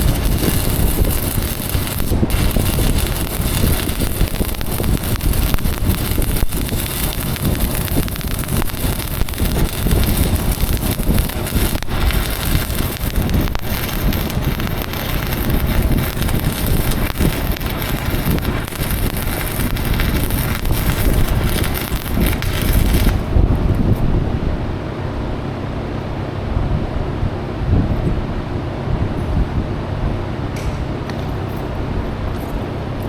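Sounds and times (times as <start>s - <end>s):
welding arc crackling and sizzling: 0.0s - 24.1s.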